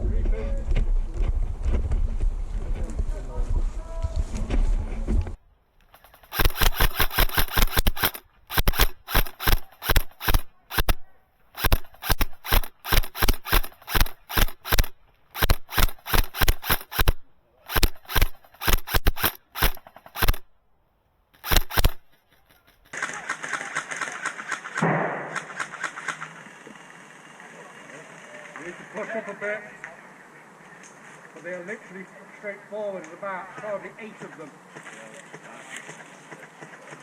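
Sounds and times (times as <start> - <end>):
airsoft gun firing rapid bursts: 5.9 - 20.4, 21.4 - 26.4.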